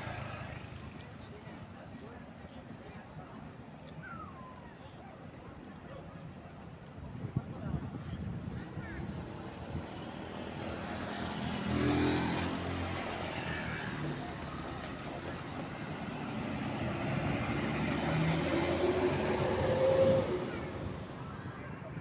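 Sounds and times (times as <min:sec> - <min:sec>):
heavy vehicle driving past: 0:10.3 - 0:22.0.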